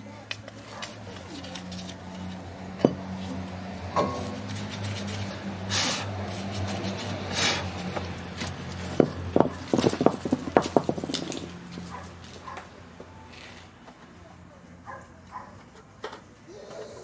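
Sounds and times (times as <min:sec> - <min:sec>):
short hisses: 0:05.7 - 0:06.1
metal tools clinking on metal: 0:09.6 - 0:12.0.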